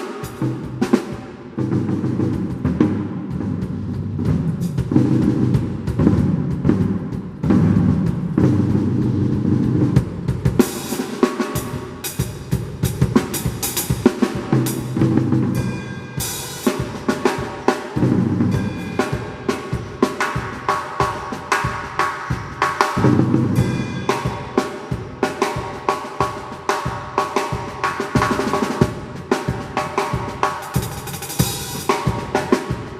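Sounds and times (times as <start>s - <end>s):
fast snare drum strokes: 0.0s - 32.9s
bass drum: 0.3s - 10.8s, 11.6s - 17.1s, 18.0s - 20.7s, 22.4s - 25.2s
cymbal crashes: 10.6s - 25.8s.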